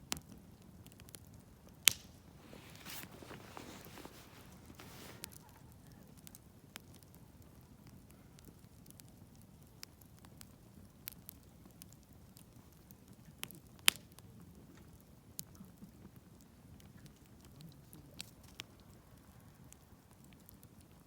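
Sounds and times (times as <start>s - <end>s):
campfire crackling: 0.0s - 21.0s
sharp fire pops: 0.1s - 5.4s, 7.8s - 14.2s.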